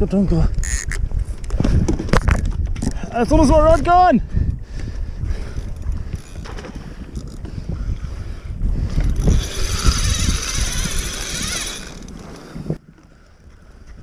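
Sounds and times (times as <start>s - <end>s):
wind: 0.0s - 14.0s
fishing reel ratchet buzzing: 0.6s - 1.0s, 5.5s - 6.4s, 9.0s - 12.5s.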